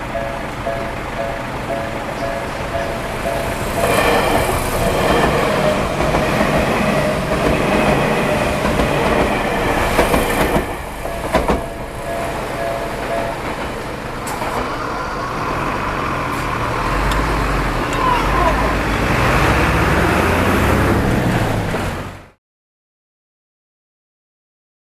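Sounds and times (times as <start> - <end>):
crossing warning bell ringing: 0.0 - 16.0
train wheels clacking over rail joints: 0.4 - 19.8.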